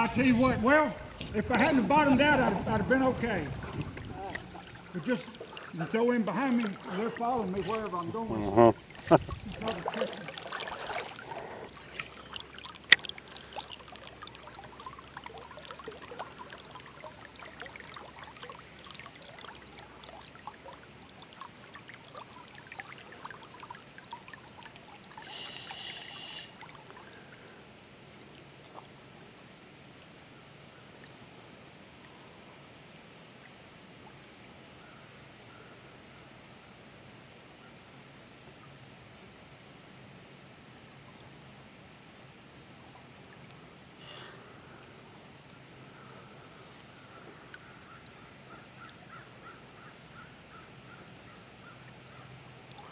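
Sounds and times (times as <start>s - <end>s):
faint steady hiss: 0.0s - 52.9s
river water trickling: 0.0s - 52.9s.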